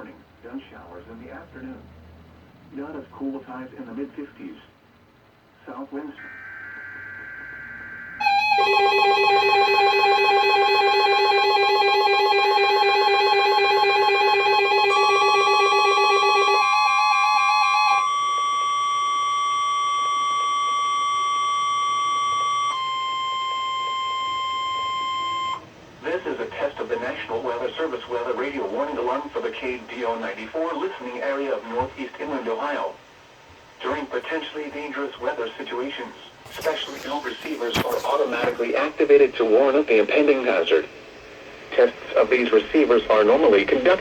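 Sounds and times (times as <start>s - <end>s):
steady held tones: 6.0s - 31.8s, 36.1s - 44.0s
data-burst tones: 6.2s - 11.0s
warbling electronic alarm: 6.2s - 25.7s.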